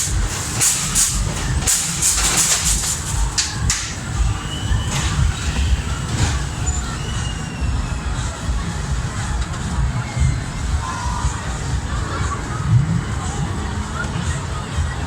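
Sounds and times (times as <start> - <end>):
hissy clattering: 0.0 - 7.4
ride car rumbling on track: 0.0 - 15.0.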